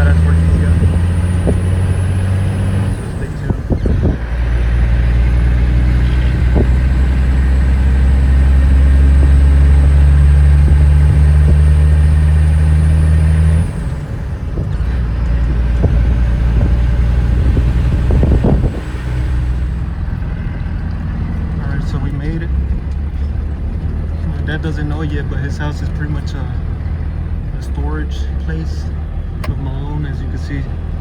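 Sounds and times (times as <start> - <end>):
road and vehicle noise: 0.0 - 31.0
truck engine droning: 0.0 - 31.0.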